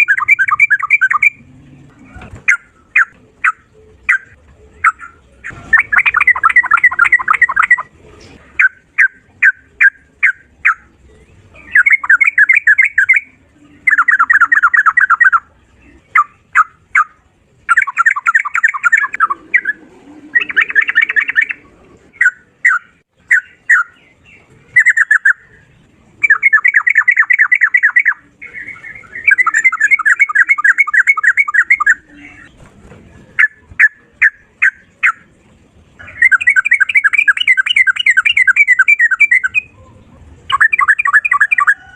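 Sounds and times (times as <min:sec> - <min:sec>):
bird singing rapid trills: 0:00.0 - 0:01.5, 0:02.5 - 0:07.9, 0:08.6 - 0:32.6, 0:36.0 - 0:39.8, 0:40.5 - 0:41.9.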